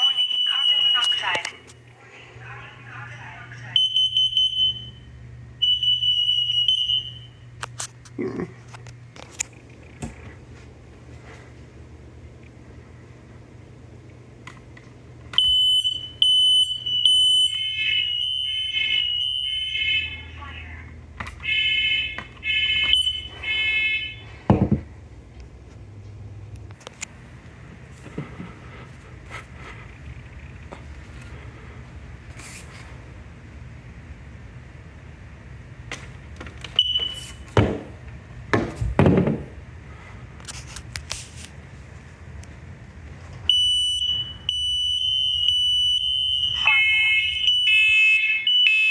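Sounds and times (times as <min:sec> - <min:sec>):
smoke alarms beeping: 0:00.0 - 0:01.9, 0:03.6 - 0:07.7, 0:15.3 - 0:20.6, 0:21.4 - 0:24.7, 0:36.6 - 0:38.1, 0:43.5 - 0:48.9
dull thumps: 0:37.4 - 0:39.6.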